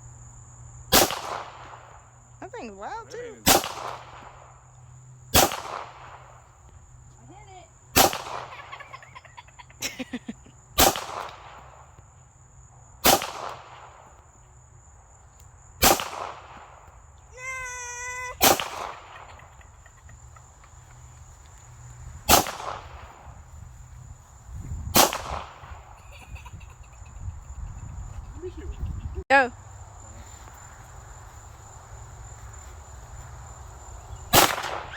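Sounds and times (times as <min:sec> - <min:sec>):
pistol shots: 0:00.9 - 0:01.8, 0:03.4 - 0:04.3, 0:05.3 - 0:06.2, 0:08.0 - 0:08.5, 0:10.8 - 0:11.6, 0:13.0 - 0:13.8, 0:15.8 - 0:16.6, 0:18.4 - 0:19.2, 0:22.3 - 0:23.0, 0:25.0 - 0:25.7, 0:34.3 - 0:34.9.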